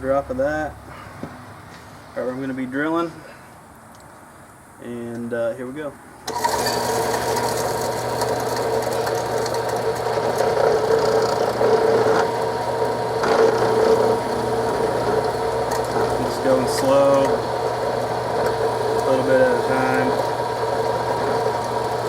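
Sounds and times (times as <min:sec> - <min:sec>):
drill press humming and whining: 0:06.3 - 0:22.0.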